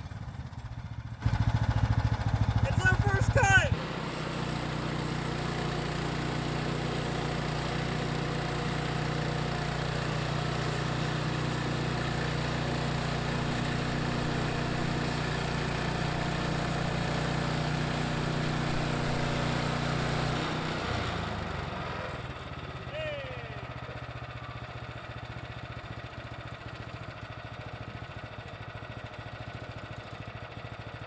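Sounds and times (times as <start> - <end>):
small gasoline engine running: 0.0 - 31.0
band blade cutting log: 12.4 - 20.8.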